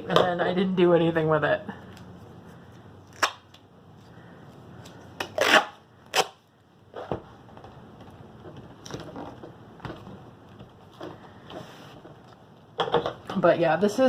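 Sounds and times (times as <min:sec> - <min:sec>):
duct tape ripping: 0:03.1 - 0:03.6, 0:05.2 - 0:06.4.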